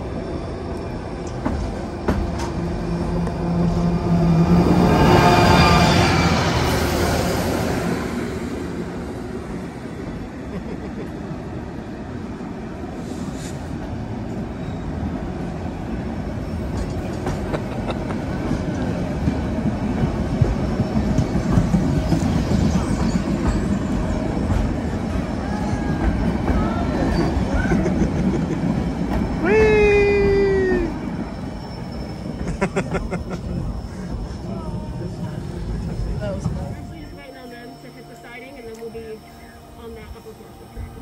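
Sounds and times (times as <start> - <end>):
train wheels rumbling: 0.0 - 41.0
clickety-clack over rail joints: 1.2 - 3.3, 16.7 - 29.8.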